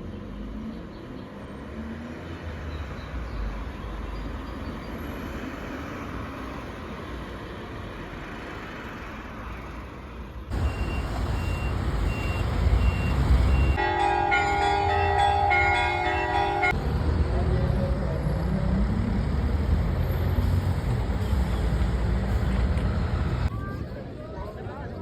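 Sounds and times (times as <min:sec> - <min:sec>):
city traffic noise: 0:00.0 - 0:25.0
low vehicle rumble: 0:10.4 - 0:23.8.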